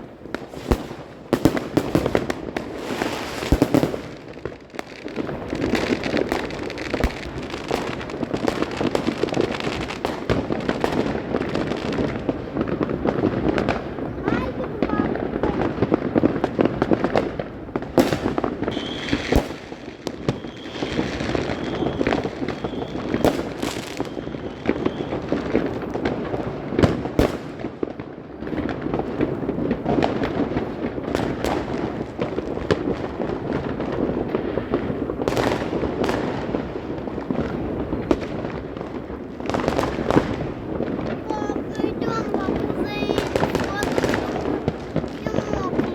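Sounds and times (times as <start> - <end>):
fireworks bangs: 0.0 - 45.9
fireworks crackling: 0.0 - 45.9.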